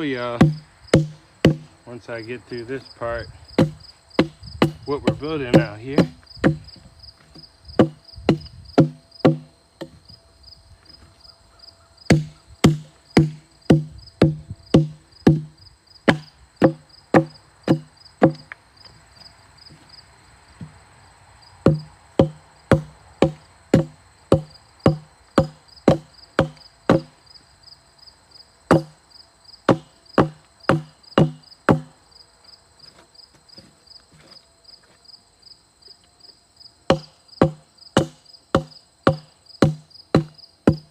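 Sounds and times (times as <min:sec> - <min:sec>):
insects chirping: 0:00.0 - 0:40.9
hatchet chopping log: 0:00.4 - 0:01.7, 0:03.6 - 0:06.7, 0:07.8 - 0:10.0, 0:12.1 - 0:18.5, 0:21.7 - 0:27.1, 0:28.7 - 0:29.0, 0:29.7 - 0:32.0, 0:36.9 - 0:40.9.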